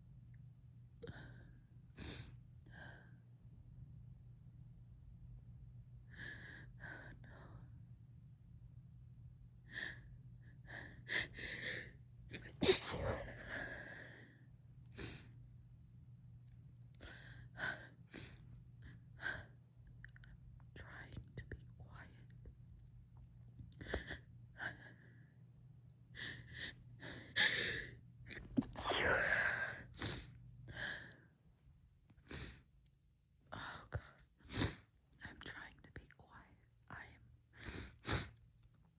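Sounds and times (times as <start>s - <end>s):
woman sneezing: 12.5s - 13.5s, 28.4s - 29.7s.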